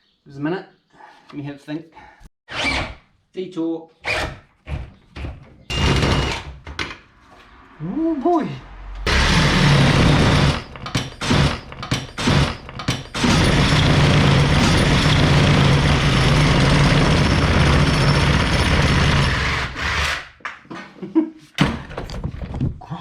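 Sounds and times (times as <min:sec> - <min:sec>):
power tool running: 0:05.7 - 0:06.4, 0:09.1 - 0:20.3.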